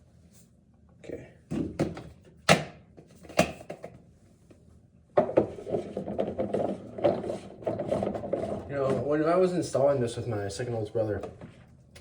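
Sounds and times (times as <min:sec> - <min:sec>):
plastic rubbing and scraping: 0:05.5 - 0:09.2.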